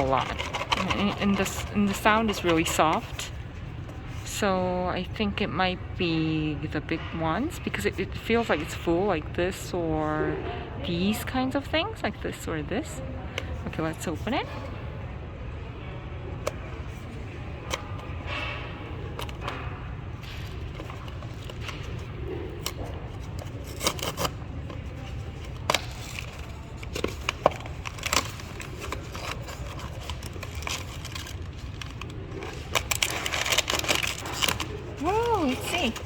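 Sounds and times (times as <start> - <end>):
packaging crinkling and tearing: 0.0 - 3.4, 16.9 - 36.0.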